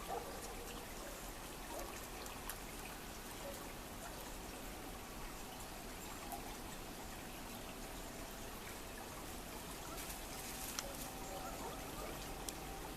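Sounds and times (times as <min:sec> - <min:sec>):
small river flowing: 0:00.0 - 0:12.9
faint sharp clicks: 0:10.6 - 0:11.1, 0:12.4 - 0:12.6.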